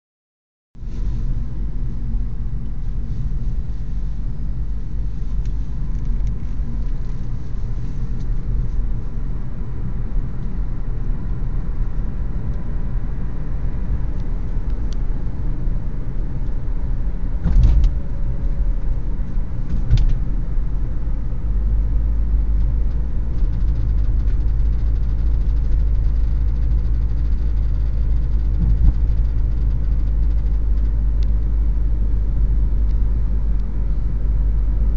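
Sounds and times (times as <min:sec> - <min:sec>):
car driving rumble: 0:00.8 - 0:34.9.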